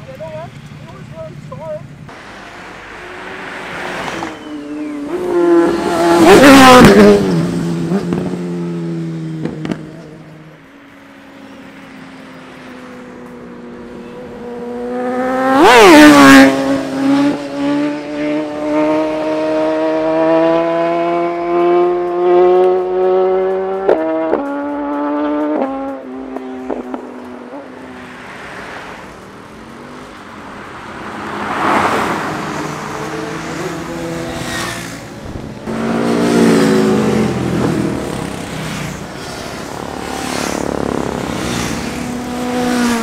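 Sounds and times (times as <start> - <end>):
motorbikes passing at speed: 0.0 - 43.0
engine running with rising pitch: 2.5 - 10.3.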